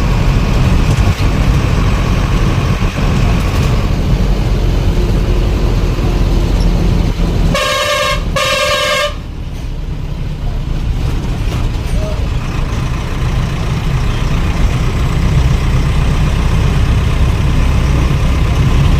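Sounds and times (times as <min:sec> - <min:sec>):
train running rumble: 0:00.0 - 0:18.9
train horn blasts: 0:07.5 - 0:09.3.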